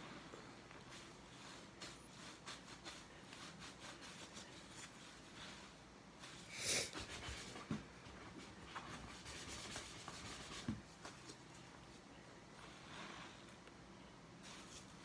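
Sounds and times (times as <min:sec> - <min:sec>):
sponge rubbing: 0:00.9 - 0:07.6
short hiss: 0:06.5 - 0:06.9.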